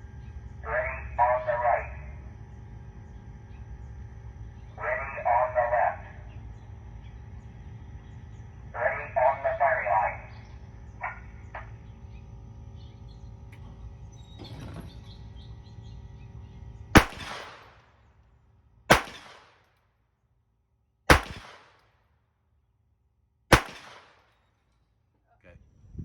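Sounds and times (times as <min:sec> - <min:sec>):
pistol shots with echo: 0:17.0 - 0:17.9, 0:18.9 - 0:19.7, 0:21.1 - 0:21.8, 0:23.5 - 0:24.3.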